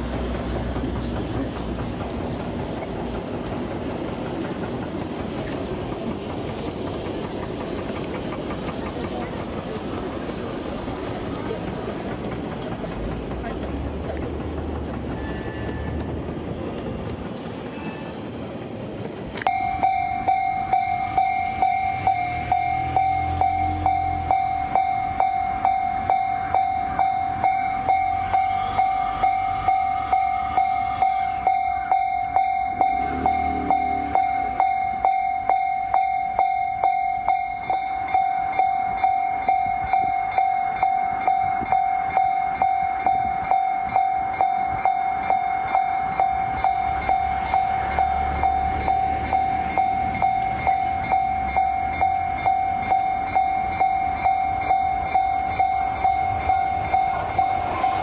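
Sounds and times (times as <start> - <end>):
level-crossing warning bell: 19.4 - 58.0.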